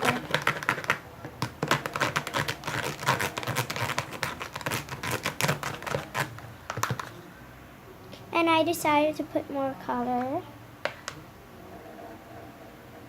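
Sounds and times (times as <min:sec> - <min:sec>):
slime stirred in a bowl: 0:00.0 - 0:07.2.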